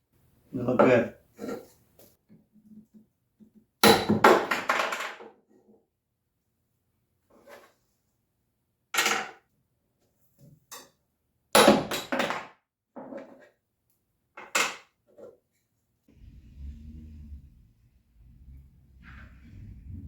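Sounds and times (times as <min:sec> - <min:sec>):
low steady rumble: 0:16.1 - 0:20.0.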